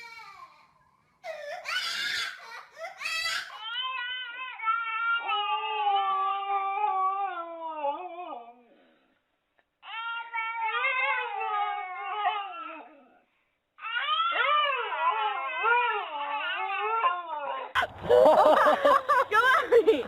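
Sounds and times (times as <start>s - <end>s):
wailing cries: 13.8s - 17.8s.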